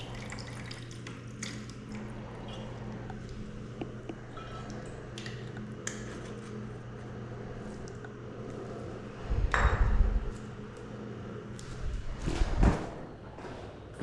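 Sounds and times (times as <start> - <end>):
steady low hum: 0.0 - 14.0
loud low rumble: 9.1 - 10.3.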